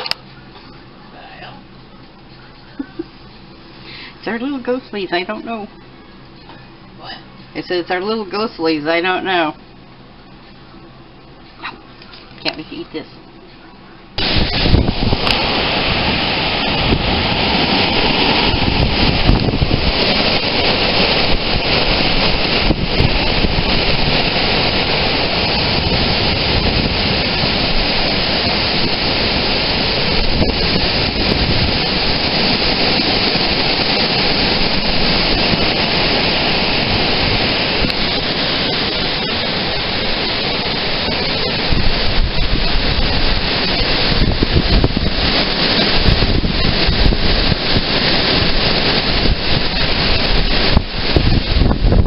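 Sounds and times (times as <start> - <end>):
strong wind buffeting microphone: 14.1 - 52.0.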